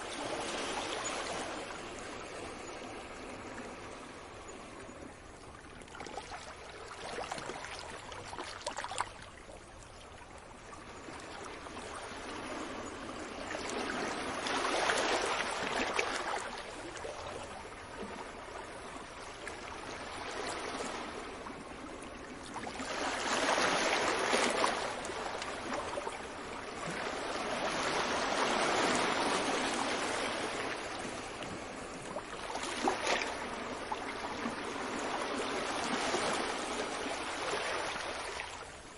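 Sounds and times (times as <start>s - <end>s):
sea waves washing onto beach: 11.2s - 38.8s.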